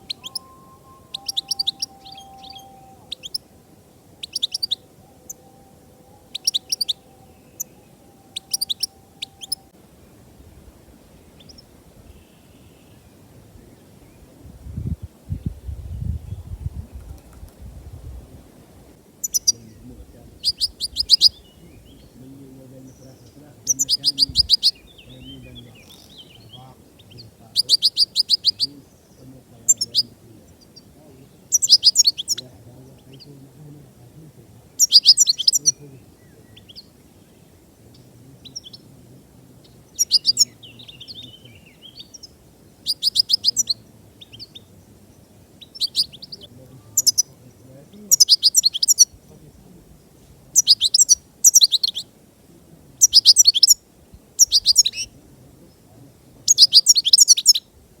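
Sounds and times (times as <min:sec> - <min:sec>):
bird calling high sharp notes: 0:00.0 - 0:03.6, 0:04.2 - 0:05.5, 0:06.2 - 0:09.8, 0:45.6 - 0:47.4
bird twittering chirps: 0:00.0 - 0:18.1, 0:19.1 - 0:57.8
low background rumble: 0:09.6 - 0:35.0.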